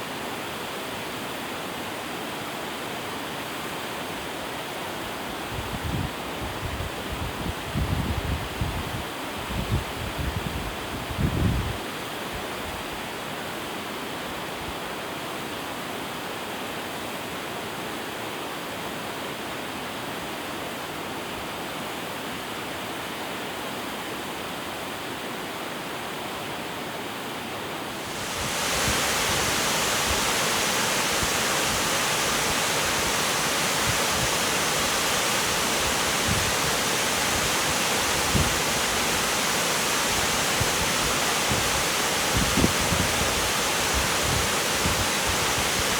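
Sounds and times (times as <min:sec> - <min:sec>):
waterfall rushing: 0:27.8 - 0:45.9.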